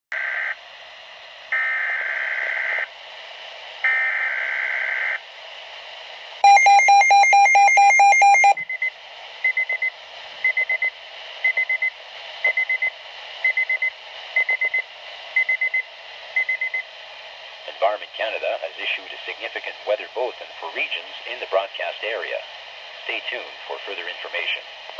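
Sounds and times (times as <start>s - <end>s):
high beep clusters: 6.4s - 8.6s
rapidly pulsing alarm tone: 6.4s - 8.6s.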